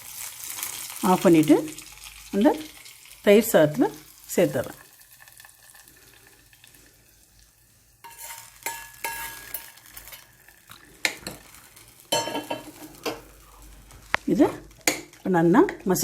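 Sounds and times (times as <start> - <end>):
metal spoon scraping metal pan: 8.0 - 10.3.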